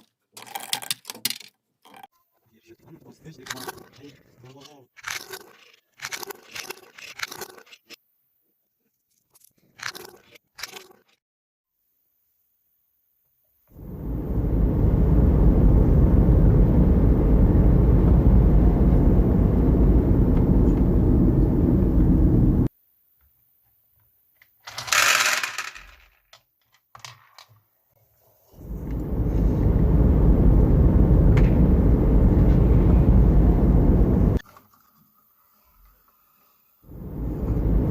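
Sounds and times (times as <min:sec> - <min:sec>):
hissing rush: 0:13.8 - 0:22.7, 0:28.5 - 0:34.4, 0:36.9 - 0:37.9
marbles rolling on wooden track: 0:24.6 - 0:27.5.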